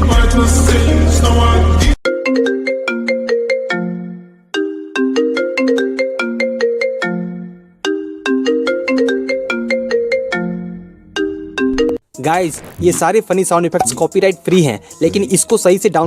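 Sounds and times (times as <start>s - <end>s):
ringtone tune: 2.0s - 12.0s.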